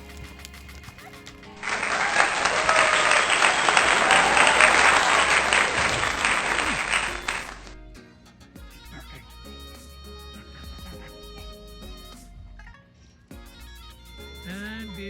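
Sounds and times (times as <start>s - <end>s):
applause: 1.6s - 7.8s
background music: 3.5s - 15.0s.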